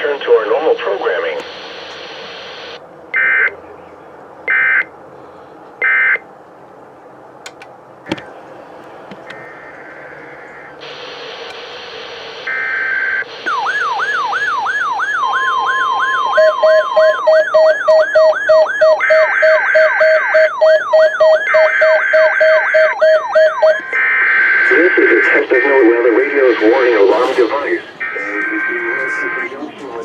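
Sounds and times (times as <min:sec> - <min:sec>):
radio hiss: 0:00.0 - 0:02.8, 0:08.9 - 0:13.6, 0:23.8 - 0:30.0
falling siren-like sweep: 0:10.8 - 0:17.9, 0:21.4 - 0:29.5
steady alert tone: 0:26.3 - 0:28.8.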